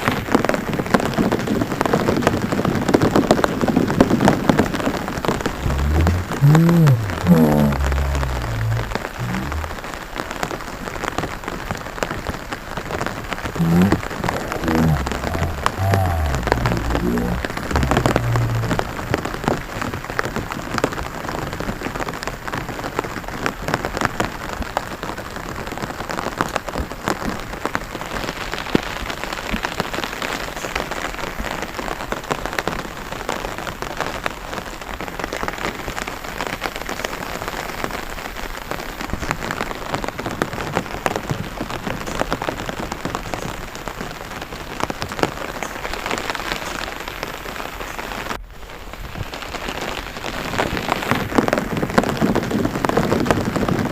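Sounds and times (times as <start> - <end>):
rain pattering: 0.0 - 53.9
low rumble: 5.6 - 9.8, 13.6 - 19.4.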